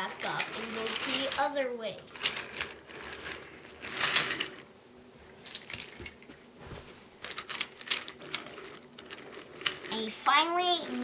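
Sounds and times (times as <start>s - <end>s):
scraping rattle: 0.0s - 4.6s
toy train track clicking and rattling: 0.0s - 4.6s, 7.2s - 11.0s.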